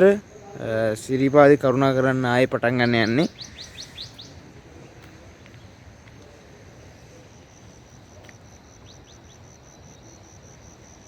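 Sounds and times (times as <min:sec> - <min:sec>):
bird chirps: 0:02.7 - 0:04.5, 0:08.7 - 0:10.2
insect trilling: 0:07.3 - 0:11.0.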